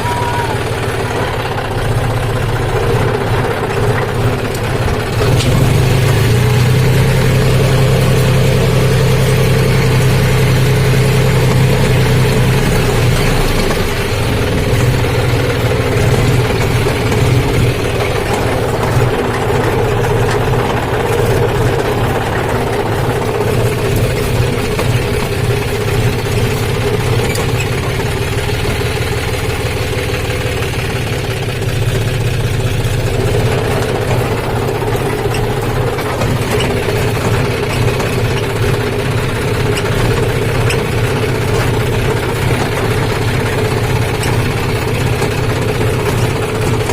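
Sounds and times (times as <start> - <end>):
tractor engine idling: 0.0 - 46.9.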